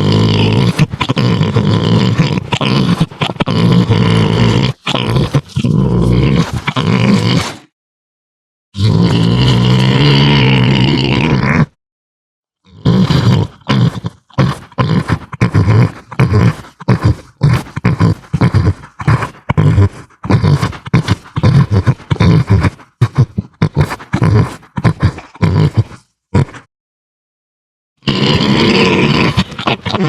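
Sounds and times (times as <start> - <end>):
deep monster grunts: 0.0 - 7.7, 28.0 - 30.0.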